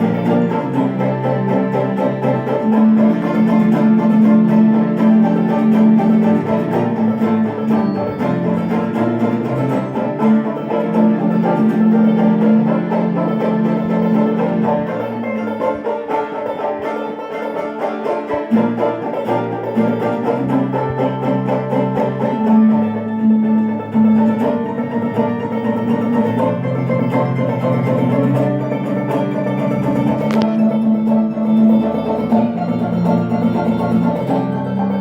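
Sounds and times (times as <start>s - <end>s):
acoustic string band playing: 0.0s - 35.0s
banjo picking: 0.0s - 35.0s.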